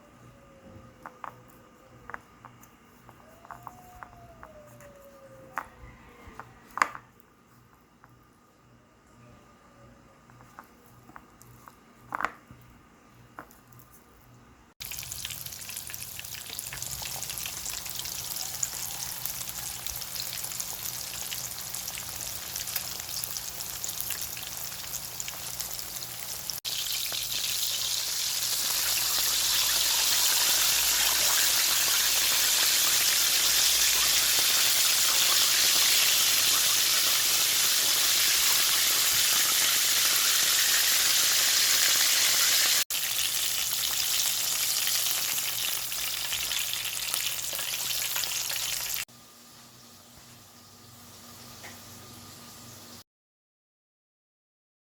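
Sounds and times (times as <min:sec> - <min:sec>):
chicken sizzling in hot oil: 0:14.8 - 0:49.1.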